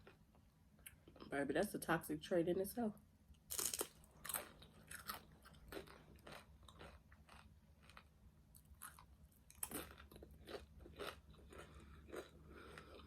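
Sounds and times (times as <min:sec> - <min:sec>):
person chewing crunchy food: 0:03.5 - 0:13.0.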